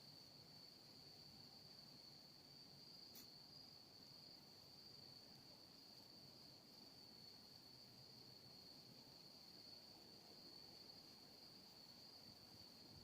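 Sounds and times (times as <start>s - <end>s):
soft click: 3.1s - 3.3s.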